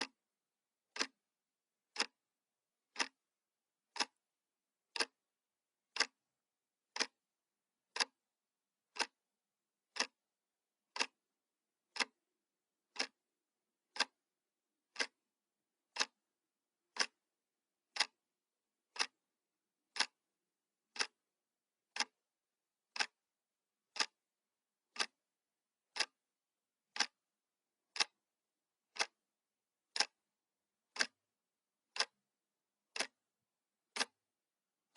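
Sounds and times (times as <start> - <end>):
clock ticking: 0.0 - 0.2, 0.9 - 1.2, 1.9 - 2.3, 2.9 - 3.2, 3.8 - 4.2, 4.8 - 5.2, 5.9 - 6.3, 6.9 - 7.2, 7.9 - 8.3, 8.9 - 9.2, 9.9 - 10.2, 10.9 - 11.2, 11.9 - 12.3, 12.9 - 13.2, 13.9 - 14.3, 14.9 - 15.2, 15.9 - 16.3, 16.9 - 17.3, 17.9 - 18.2, 18.9 - 19.2, 19.9 - 21.3, 21.9 - 22.2, 22.9 - 23.2, 23.9 - 24.3, 24.9 - 25.2, 25.9 - 26.2, 26.9 - 27.3, 27.9 - 29.3, 29.9 - 31.3, 31.9 - 33.3, 33.9 - 34.3.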